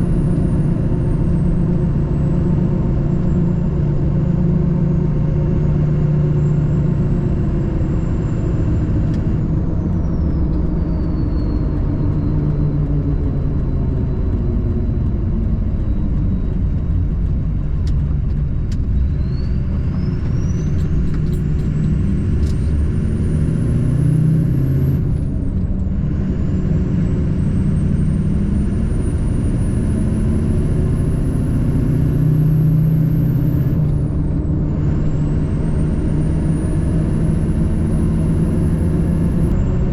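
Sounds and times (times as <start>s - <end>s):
diesel truck driving: 0.0s - 39.9s
high whine rising in pitch: 26.2s - 39.9s.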